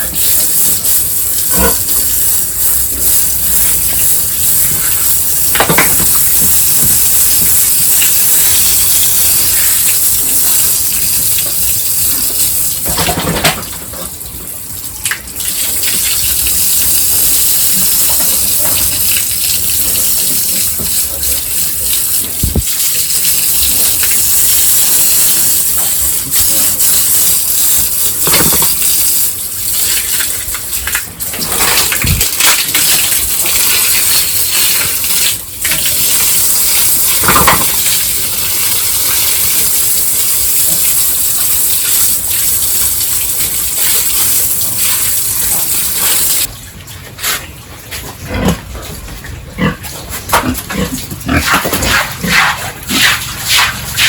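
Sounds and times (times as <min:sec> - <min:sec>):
water spraying hiss: 0:00.0 - 0:13.4, 0:15.4 - 0:46.5
pigs grunting and squealing: 0:01.3 - 0:02.3, 0:03.9 - 0:06.5, 0:28.2 - 0:28.9, 0:36.8 - 0:38.2, 0:48.0 - 0:54.0.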